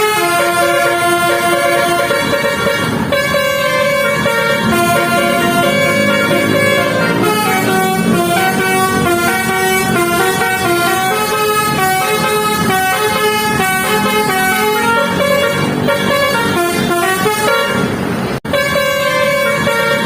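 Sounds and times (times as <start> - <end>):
musical bus air horn melody: 0.0 - 20.0.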